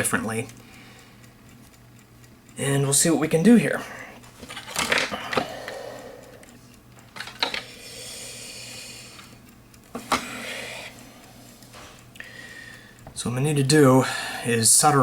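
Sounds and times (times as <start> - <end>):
low steady hum: 0.0 - 15.0
small parts clicking and clattering: 4.4 - 7.8.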